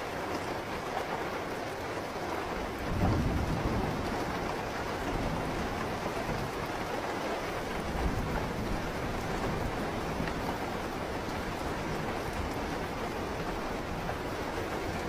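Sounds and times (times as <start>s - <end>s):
steady rainfall: 0.0s - 15.0s
thunder rumbling: 2.6s - 6.9s, 7.6s - 15.0s.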